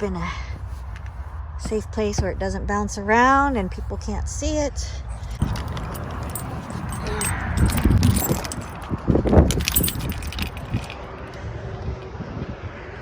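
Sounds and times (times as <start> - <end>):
small items jingling and clattering: 5.1 - 11.0.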